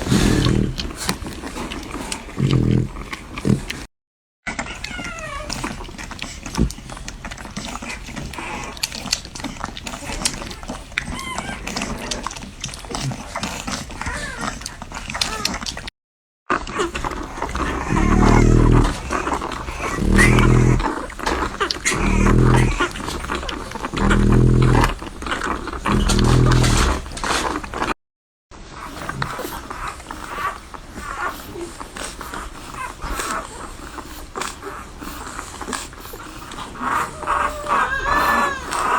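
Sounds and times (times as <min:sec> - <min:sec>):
low growl-like grunts: 0:00.0 - 0:01.3, 0:02.2 - 0:03.9, 0:16.8 - 0:27.5
puppies suckling and squeaking: 0:00.0 - 0:03.9, 0:04.5 - 0:15.9, 0:16.6 - 0:28.0, 0:28.7 - 0:38.9.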